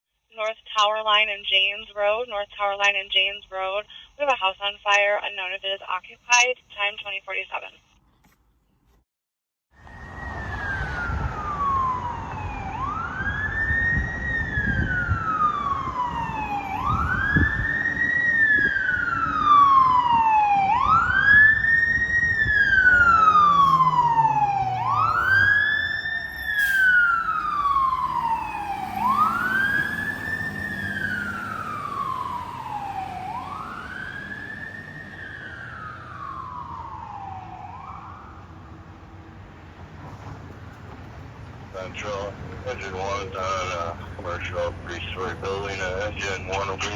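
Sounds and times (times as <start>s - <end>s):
fire engine siren wailing: 9.8s - 39.5s, 41.7s - 46.9s
truck engine rumble: 9.8s - 46.9s.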